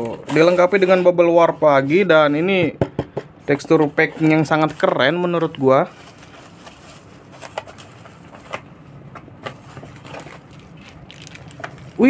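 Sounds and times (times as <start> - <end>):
bubble wrap packaging rustling: 0.0 - 2.7, 3.5 - 12.0.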